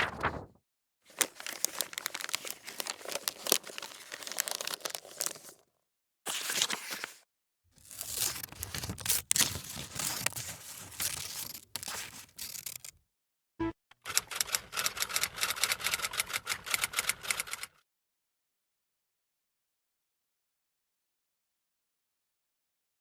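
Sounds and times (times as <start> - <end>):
crackling rustling noise: 0.0 - 0.5, 1.1 - 5.6, 6.3 - 7.2, 7.8 - 12.9.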